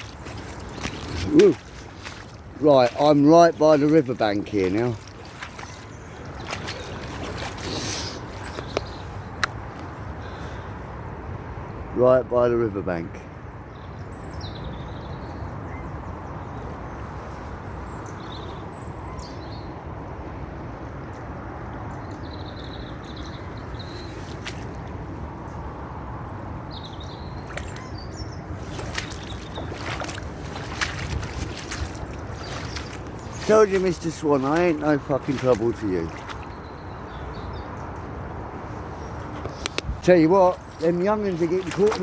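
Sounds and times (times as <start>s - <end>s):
fast-flowing river rushing: 0.0s - 8.8s, 28.6s - 36.6s, 39.2s - 42.0s
short sharp clicks or splashes: 0.0s - 9.6s, 24.2s - 25.0s, 27.4s - 28.0s, 28.6s - 36.6s, 39.4s - 42.0s.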